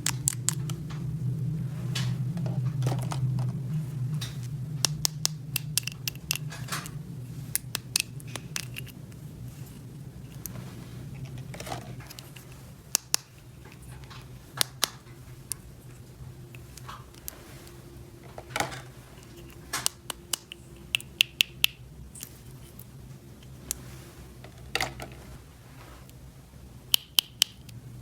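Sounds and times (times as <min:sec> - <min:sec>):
low steady hum: 0:00.0 - 0:28.0
plastic toy pieces clicking: 0:04.8 - 0:06.9, 0:07.6 - 0:09.0.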